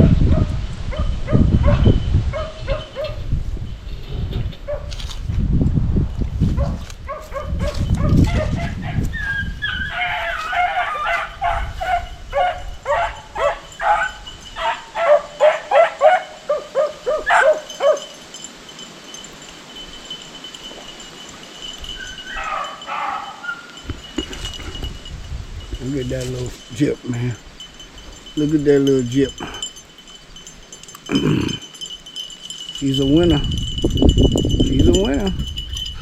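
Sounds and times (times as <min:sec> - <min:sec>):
dogs baying yelps: 0:00.4 - 0:03.2, 0:04.6 - 0:04.9, 0:06.6 - 0:18.4, 0:21.7 - 0:24.1.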